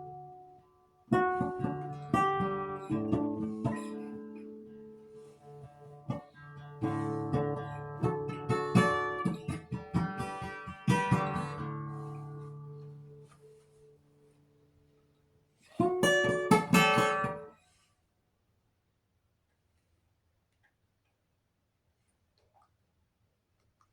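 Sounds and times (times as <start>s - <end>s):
acoustic guitar: 0.0s - 14.5s, 15.6s - 17.6s.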